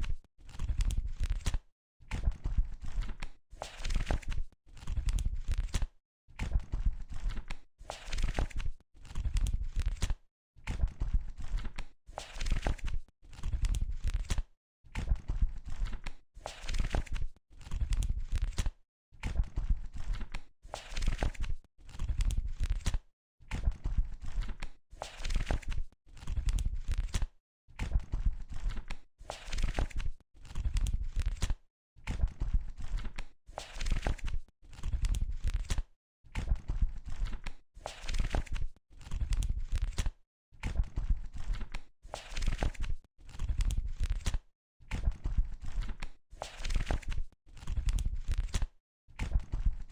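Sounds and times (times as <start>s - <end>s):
book pages turning: 33.6s - 35.8s, 37.9s - 40.1s, 41.4s - 44.4s, 45.7s - 48.6s.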